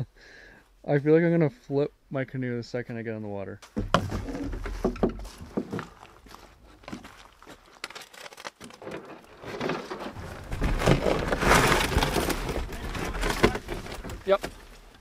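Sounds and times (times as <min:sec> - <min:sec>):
scraping and rustling: 0:04.0 - 0:15.0.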